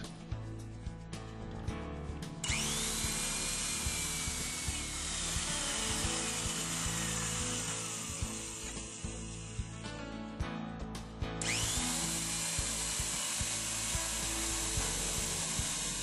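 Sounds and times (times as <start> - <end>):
soft background music: 0.0 - 16.0
electric drill with hole saw cutting wood: 2.4 - 9.8, 11.4 - 16.0.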